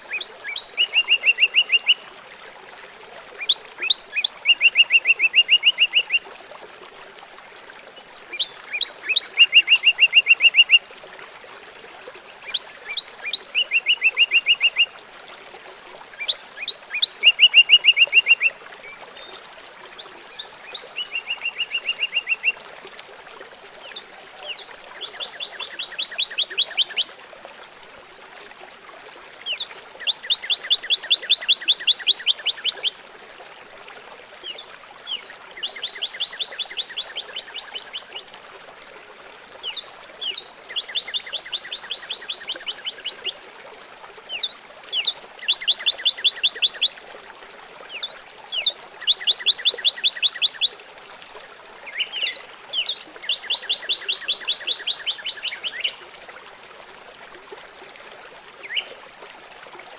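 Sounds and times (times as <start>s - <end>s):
trickling water: 0.0s - 59.9s
songbird singing trills: 0.1s - 2.0s, 3.4s - 6.2s, 8.3s - 10.8s, 12.5s - 14.9s, 16.2s - 18.5s, 20.3s - 22.6s, 23.9s - 27.0s, 29.5s - 32.9s, 34.5s - 38.2s, 39.6s - 43.4s, 44.3s - 46.9s, 47.9s - 50.7s, 51.9s - 56.0s.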